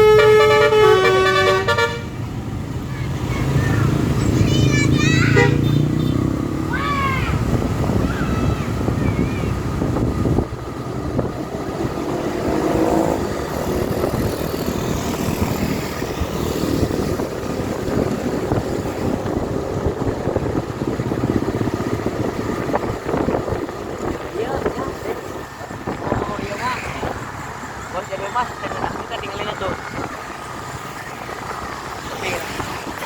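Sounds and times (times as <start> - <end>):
traffic engine and road rumble: 0.0 - 33.0.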